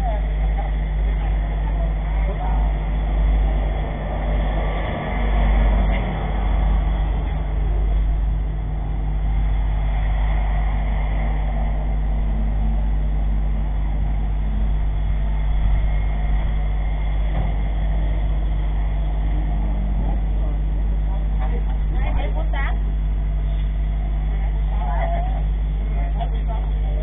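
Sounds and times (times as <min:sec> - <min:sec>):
vehicle engine running: 0:00.0 - 0:27.0.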